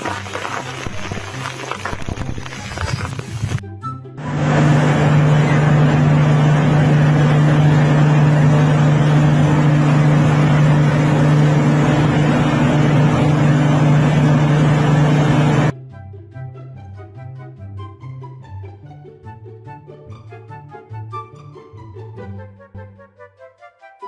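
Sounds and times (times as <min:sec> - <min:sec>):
engine running loudly: 0:04.2 - 0:15.8.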